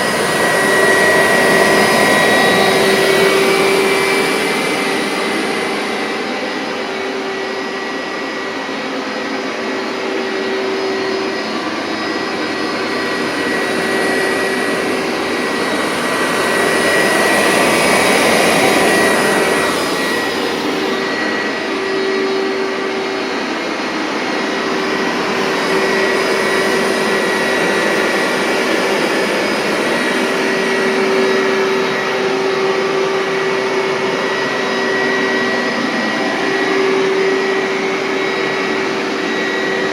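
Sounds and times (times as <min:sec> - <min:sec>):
carpet cleaner motor whining: 0:00.0 - 0:39.9.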